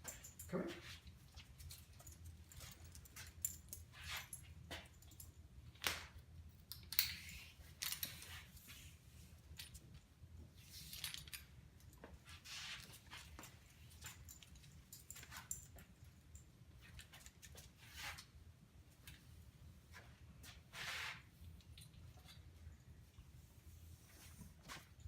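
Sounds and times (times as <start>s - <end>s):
dog collar jingling: 0.0s - 5.4s, 13.1s - 16.5s.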